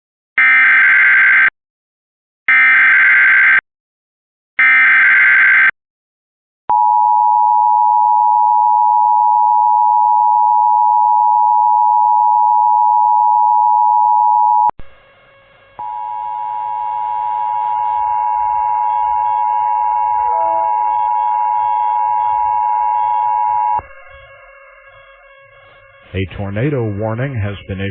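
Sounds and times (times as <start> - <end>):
shrill data bursts: 15.0 - 27.9
two-tone attention signal: 15.8 - 27.5.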